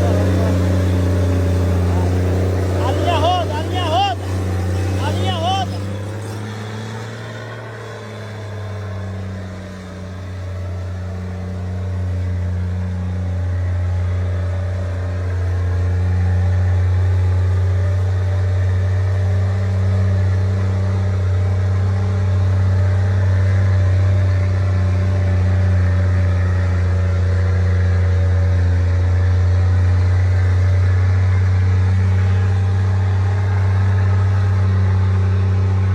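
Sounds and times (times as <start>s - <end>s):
car engine running: 0.0s - 35.9s.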